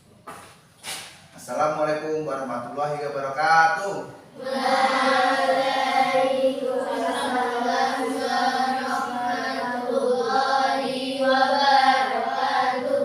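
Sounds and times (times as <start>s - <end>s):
children answering in unison: 4.4s - 13.0s.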